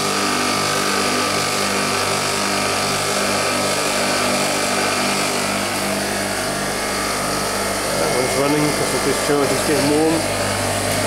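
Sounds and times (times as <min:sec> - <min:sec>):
compressor humming: 0:00.0 - 0:11.0.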